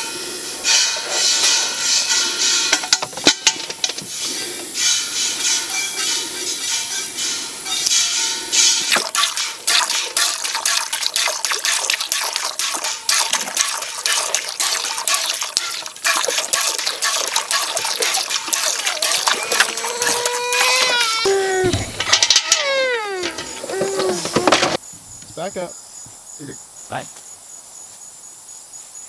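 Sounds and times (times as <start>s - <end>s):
milk squirting into metal pail: 8.8s - 24.8s
short high-pitched cries: 18.8s - 24.8s.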